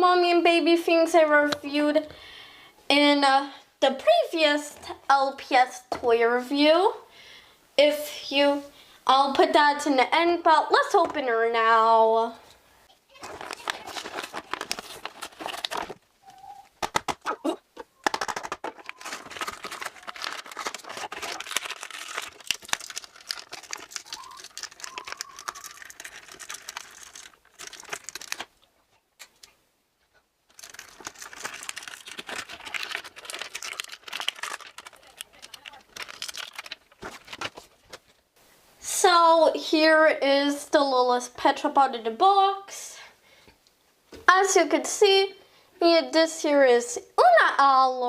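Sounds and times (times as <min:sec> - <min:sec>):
packaging tearing and crinkling: 0:13.2 - 0:16.0, 0:18.0 - 0:28.6, 0:30.5 - 0:38.0.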